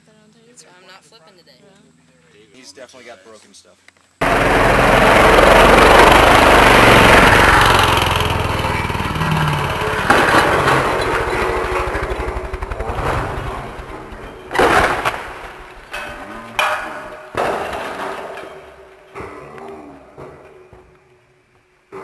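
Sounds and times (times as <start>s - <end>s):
small engine running: 4.2s - 18.8s.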